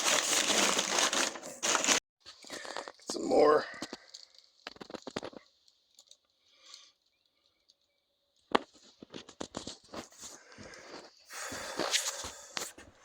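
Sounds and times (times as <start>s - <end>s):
cardboard boxes clicking and rustling: 0.0s - 2.0s.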